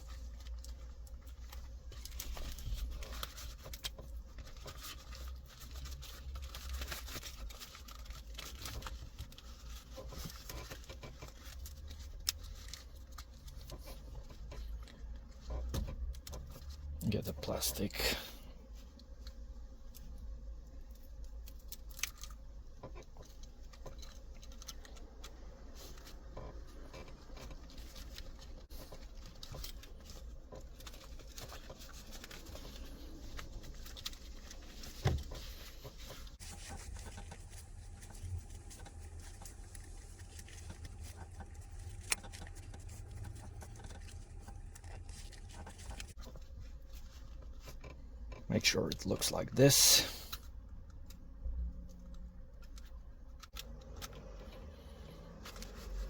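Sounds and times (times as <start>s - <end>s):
soft rustling: 0.0s - 56.0s.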